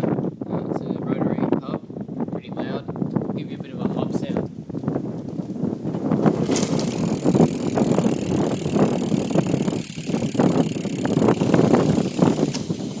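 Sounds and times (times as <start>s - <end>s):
bike rolling: 4.8s - 13.0s
bike knocking and rattling: 5.2s - 13.0s.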